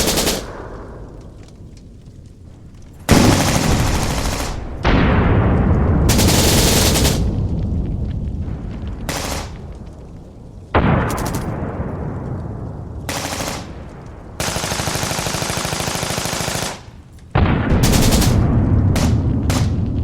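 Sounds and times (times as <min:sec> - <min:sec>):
machine-gun fire bursts: 0:00.0 - 0:00.8, 0:03.1 - 0:05.3, 0:06.1 - 0:07.4, 0:09.1 - 0:09.6, 0:10.8 - 0:11.5, 0:13.1 - 0:13.8, 0:14.4 - 0:19.8
deep rumble: 0:00.0 - 0:15.5, 0:17.0 - 0:20.0.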